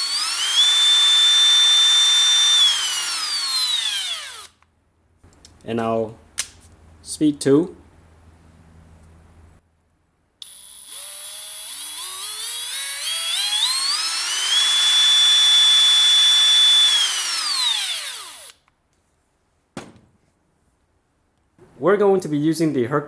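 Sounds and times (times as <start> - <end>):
cordless drill motor whine: 0.0 - 4.6, 10.4 - 18.6.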